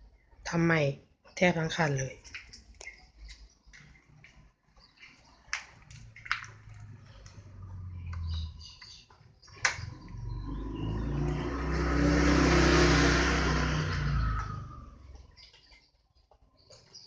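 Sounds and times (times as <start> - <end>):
sharp clicks: 5.0 - 10.3
motorcycle engine revving: 6.6 - 8.8, 9.6 - 15.5.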